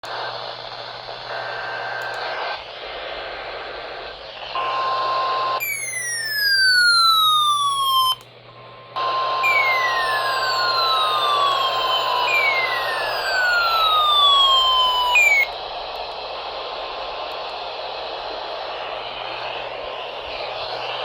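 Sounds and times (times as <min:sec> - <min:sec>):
radio static hiss: 0:00.0 - 0:05.6, 0:08.4 - 0:21.0
steady radio tones: 0:00.1 - 0:06.0, 0:07.8 - 0:21.0
downward sweeping whistles: 0:05.6 - 0:08.2, 0:09.4 - 0:15.6.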